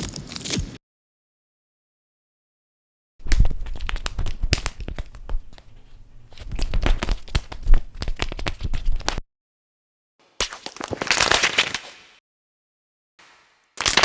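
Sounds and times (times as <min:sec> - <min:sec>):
object crinkling and crackling: 0:03.2 - 0:09.2, 0:10.4 - 0:12.0.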